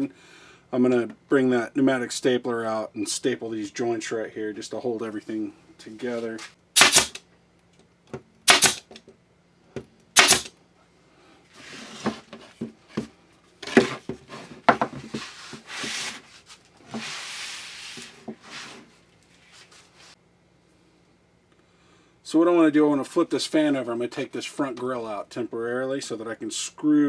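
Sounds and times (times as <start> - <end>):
pneumatic stapler shots: 6.8 - 7.2, 8.5 - 9.0, 10.1 - 10.5.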